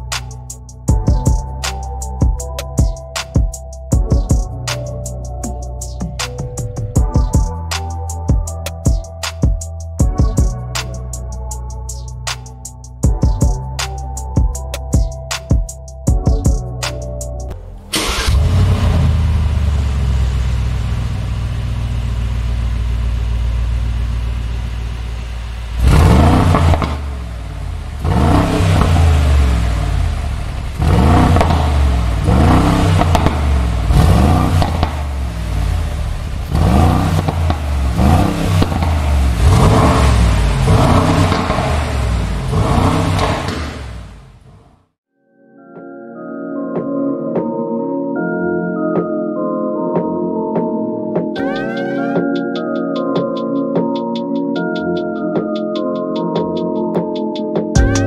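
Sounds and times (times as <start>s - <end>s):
car engine idling and revving: 17.7s - 44.6s.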